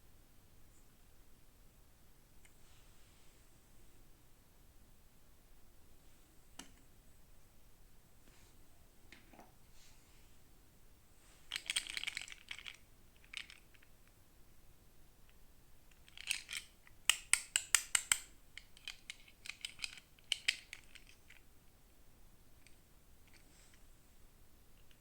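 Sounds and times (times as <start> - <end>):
sharp plastic clicks: 16.3 - 21.1.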